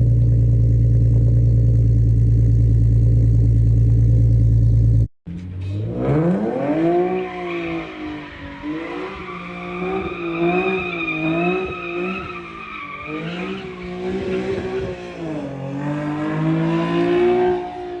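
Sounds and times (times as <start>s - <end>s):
car engine revving: 0.0s - 18.0s.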